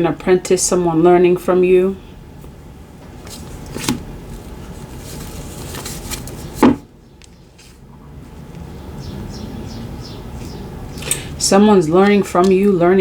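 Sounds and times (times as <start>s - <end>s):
cards rustling: 3.2s - 6.6s, 7.2s - 7.8s.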